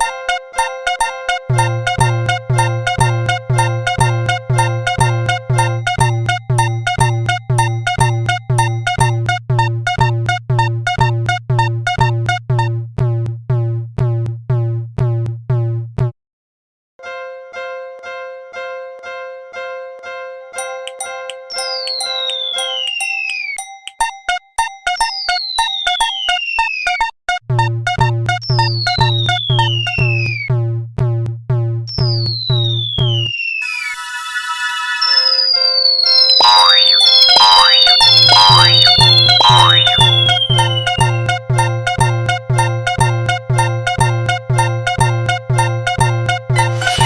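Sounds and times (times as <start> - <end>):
held synth notes: 0.0 - 12.7, 20.6 - 26.4, 33.6 - 47.0
higher sustained crossing bell: 20.6 - 24.0
falling high tone: 20.6 - 24.1, 33.6 - 42.0, 44.6 - 47.0
railroad crossing bell ringing: 20.6 - 24.1.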